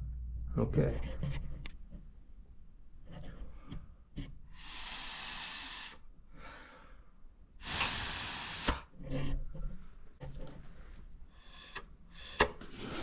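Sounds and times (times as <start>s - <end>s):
hissing air bursts: 4.5s - 6.0s, 7.6s - 8.9s.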